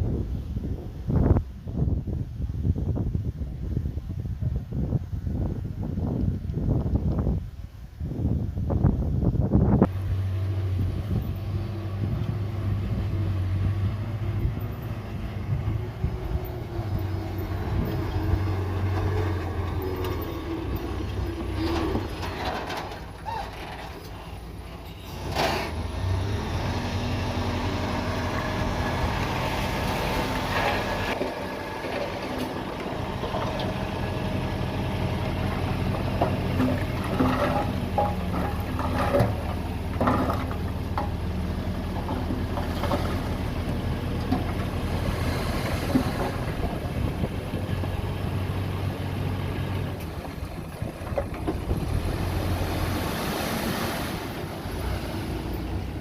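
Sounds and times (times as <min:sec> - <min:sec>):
heavy diesel engine running: 0:09.9 - 0:56.0
metal clanks and knocks: 0:17.6 - 0:24.4, 0:35.5 - 0:41.2.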